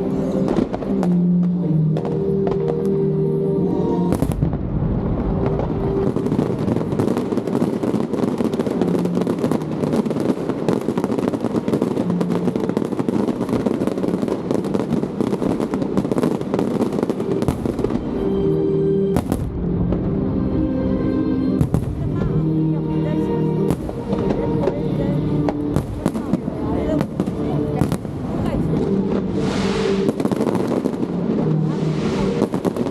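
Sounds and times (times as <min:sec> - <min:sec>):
fireworks crackling and popping: 0:00.0 - 0:03.0, 0:03.7 - 0:20.2, 0:21.6 - 0:32.9
music: 0:00.0 - 0:32.9
heavy firework bangs: 0:04.1 - 0:18.4, 0:19.1 - 0:20.1, 0:23.7 - 0:32.9.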